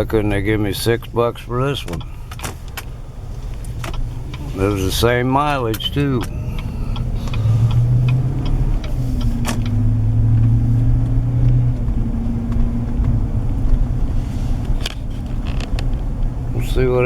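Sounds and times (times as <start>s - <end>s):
car engine hum from cabin: 0.0s - 17.0s
sharp clicks: 3.5s - 10.6s.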